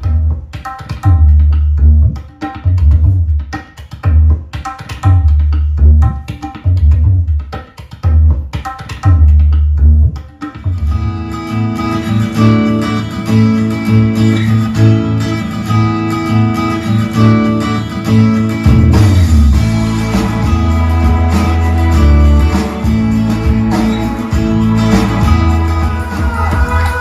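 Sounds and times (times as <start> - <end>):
film song over speakers: 10.8 - 27.0.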